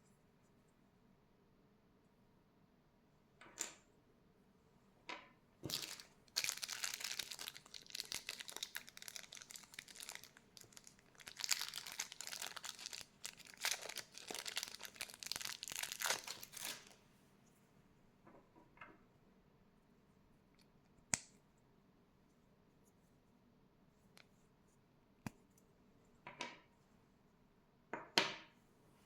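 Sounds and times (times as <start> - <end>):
packaging crinkling by hand: 5.6 - 17.0.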